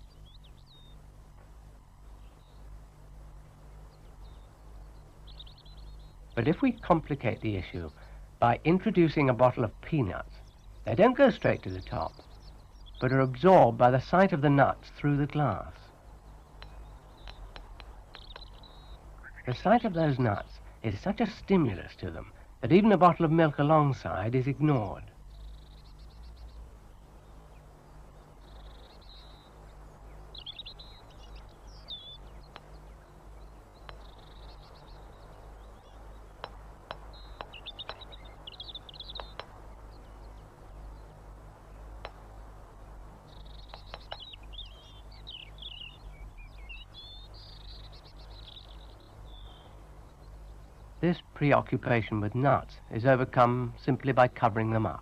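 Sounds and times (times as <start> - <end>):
birds twittering: 0.0 - 55.0
low steady hum: 0.0 - 55.0
sharp taps: 16.6 - 18.6, 36.4 - 38.1, 39.2 - 39.6, 42.0 - 42.3, 43.7 - 44.3.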